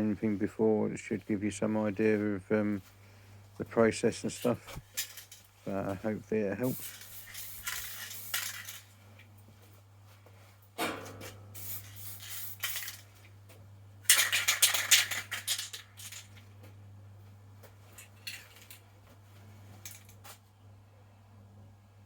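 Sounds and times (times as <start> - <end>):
spray can rattling: 4.3 - 5.9, 6.6 - 8.9, 11.6 - 13.1, 14.1 - 16.4, 18.0 - 18.8, 19.8 - 20.2
spray can hissing: 6.6 - 8.8, 11.6 - 13.0.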